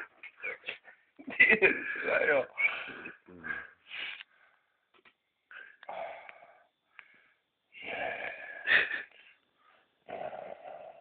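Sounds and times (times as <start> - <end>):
man snoring with wheezy breaths: 5.7 - 6.7, 7.8 - 9.1, 10.0 - 11.0.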